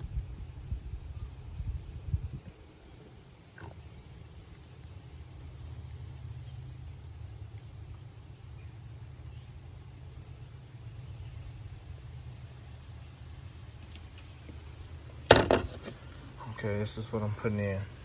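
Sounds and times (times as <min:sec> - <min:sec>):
crickets chirping: 0:00.0 - 0:18.0.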